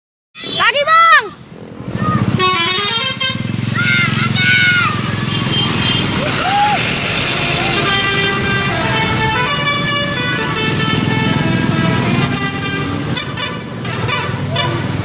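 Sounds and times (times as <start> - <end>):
musical bus air horns: 2.3 - 4.3, 5.2 - 15.0.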